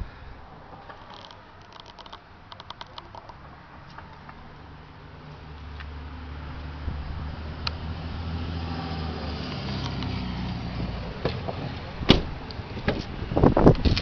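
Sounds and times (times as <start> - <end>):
sharp clicks: 1.1 - 4.4.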